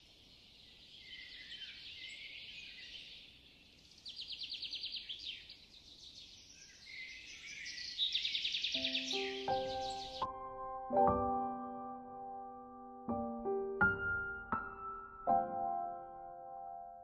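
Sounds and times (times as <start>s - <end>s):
birds chirping and calling: 0.2s - 10.3s
bird trill: 6.2s - 10.4s.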